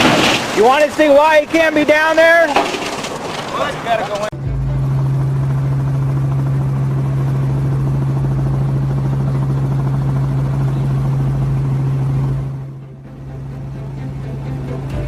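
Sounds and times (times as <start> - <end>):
machine humming: 4.4 - 15.0.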